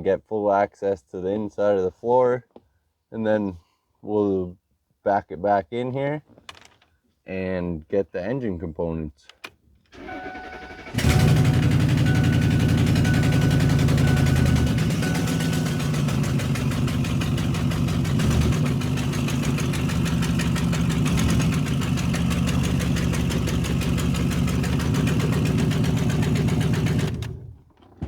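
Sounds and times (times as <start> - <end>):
truck engine idling: 10.0 - 27.5.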